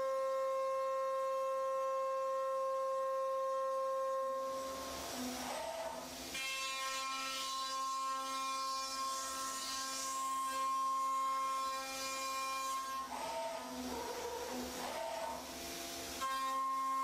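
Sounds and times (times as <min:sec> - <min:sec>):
cnc router spindle whine: 0:00.0 - 0:09.1, 0:10.4 - 0:17.0
cutter hissing through wood: 0:04.5 - 0:17.0.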